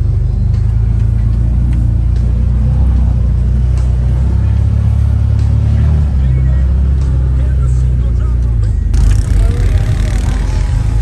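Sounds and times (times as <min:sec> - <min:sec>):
vehicle engine droning: 0:00.0 - 0:11.0.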